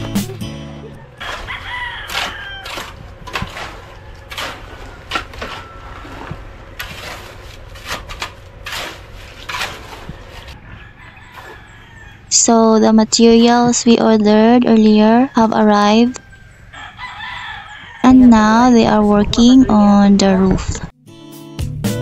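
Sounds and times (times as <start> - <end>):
background music: 0.0 - 1.2, 21.0 - 22.0
rooster crowing: 1.0 - 6.3, 10.1 - 12.4, 15.0 - 18.2
chickens clucking: 10.0 - 18.0.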